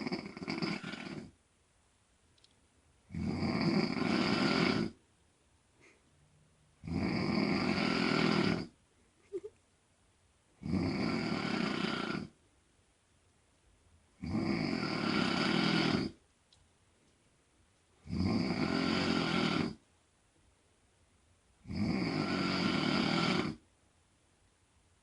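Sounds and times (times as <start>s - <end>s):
woman snoring loudly: 0.0s - 1.4s, 3.1s - 5.0s, 6.8s - 8.7s, 10.6s - 12.4s, 14.2s - 16.2s, 18.0s - 19.8s, 21.6s - 23.6s.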